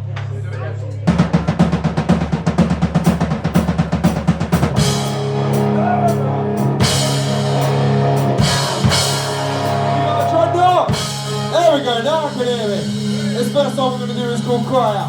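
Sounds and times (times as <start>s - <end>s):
hard rock band playing live: 1.1s - 15.0s
rapid drum hits: 1.1s - 15.0s
cymbal crashes: 4.6s - 15.0s.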